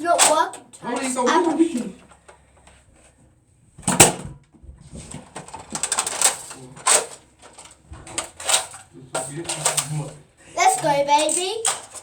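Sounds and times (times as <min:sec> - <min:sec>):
toy blaster plastic clacks: 0:00.1 - 0:01.8, 0:05.4 - 0:12.0.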